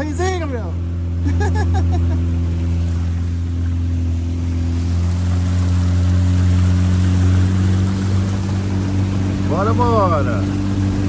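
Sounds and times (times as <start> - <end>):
outboard motor droning: 0.0 - 11.0
water hissing: 2.4 - 11.0.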